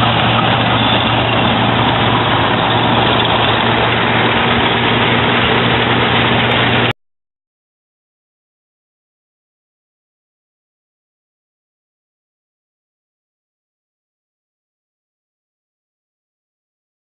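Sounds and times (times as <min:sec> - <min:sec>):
combine harvester running: 0:00.0 - 0:07.0.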